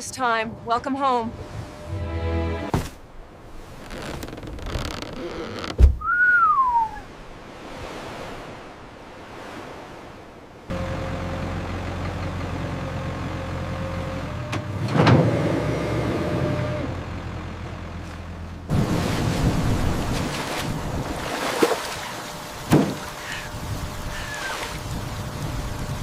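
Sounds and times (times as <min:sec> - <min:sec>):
heavy thump: 0:02.7 - 0:03.0, 0:05.7 - 0:06.1
falling whistle-like tone: 0:06.0 - 0:07.1.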